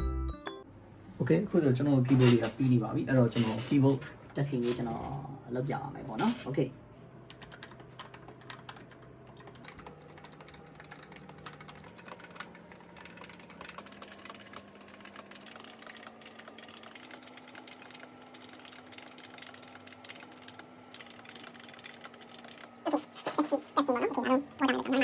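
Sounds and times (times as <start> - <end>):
mechanical keyboard typing: 7.3 - 24.0.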